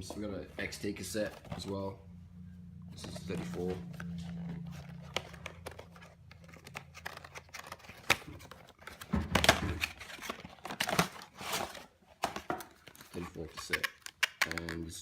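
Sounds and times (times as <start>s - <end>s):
packaging rustling and tearing: 3.0s - 14.2s.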